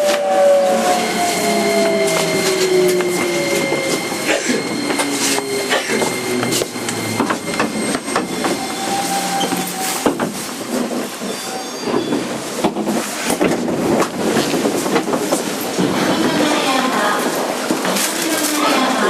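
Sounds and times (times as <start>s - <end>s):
train rolling noise: 0.0s - 19.0s
thin whining drive tones: 1.0s - 12.2s.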